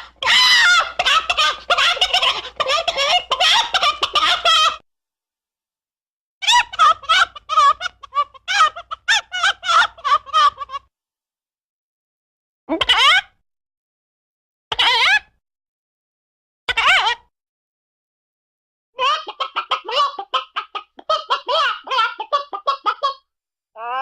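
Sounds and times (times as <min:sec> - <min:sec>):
chicken clucking and squawking: 0:00.0 - 0:04.8, 0:19.0 - 0:23.2.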